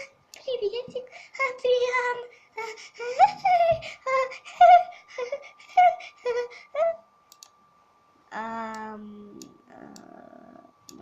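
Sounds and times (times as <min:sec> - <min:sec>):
girl's high-pitched wordless voice: 0:00.0 - 0:04.8, 0:08.3 - 0:10.7.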